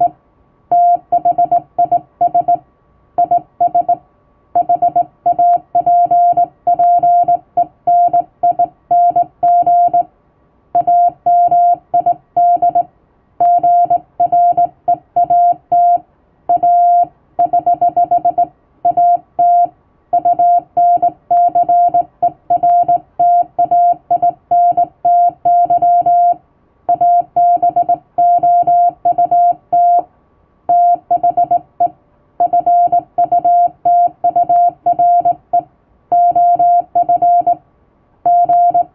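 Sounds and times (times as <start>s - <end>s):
morse code beeps: 0.7s - 2.6s, 3.2s - 4.0s, 4.6s - 10.1s, 10.8s - 30.0s, 30.7s - 37.6s, 38.3s - 38.9s.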